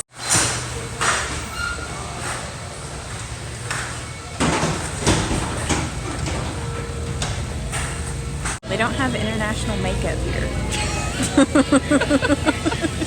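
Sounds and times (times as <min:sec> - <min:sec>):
shopping cart wheels rumbling: 0:00.0 - 0:13.0
clattering knocks: 0:03.7 - 0:08.6.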